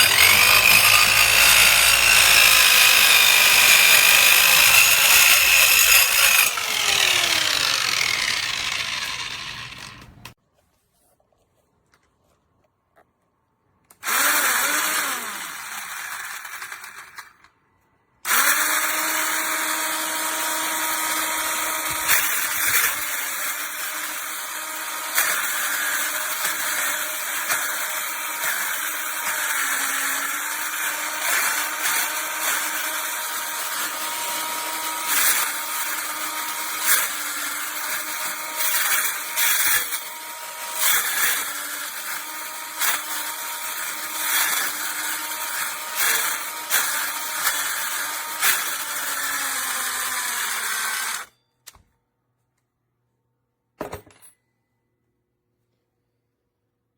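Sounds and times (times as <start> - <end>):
circular saw motor running: 0.0 - 10.3.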